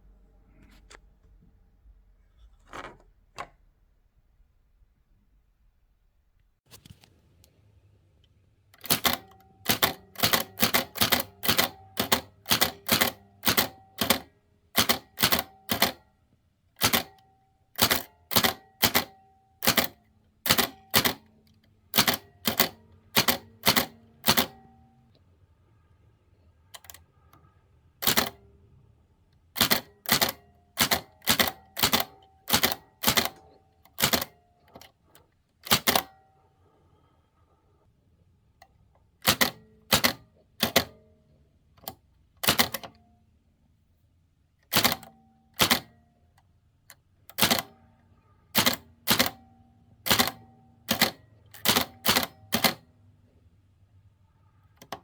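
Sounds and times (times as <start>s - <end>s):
typewriter keystrokes clacking: 8.8s - 16.0s, 16.8s - 17.2s, 17.8s - 21.2s, 22.0s - 24.6s, 28.0s - 28.4s, 29.6s - 34.4s, 35.6s - 36.1s, 39.2s - 41.0s, 41.8s - 42.9s, 44.7s - 45.9s, 47.3s - 47.7s, 48.6s - 49.4s, 50.1s - 52.8s.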